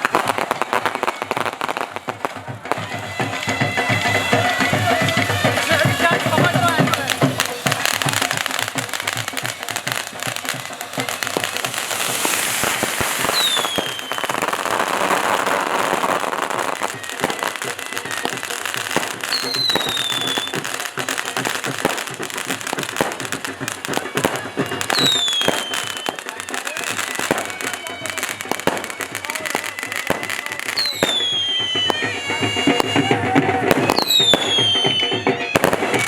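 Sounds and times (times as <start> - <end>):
fireworks crackling and popping: 0.0 - 36.0
falling whistle: 6.6 - 21.4, 24.1 - 36.0.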